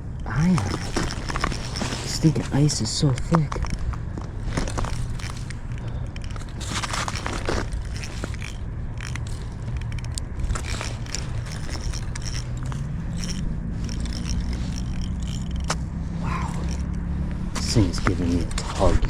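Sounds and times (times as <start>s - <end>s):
sharp clicks: 0.0s - 15.9s
scraping and crackling: 0.0s - 19.0s.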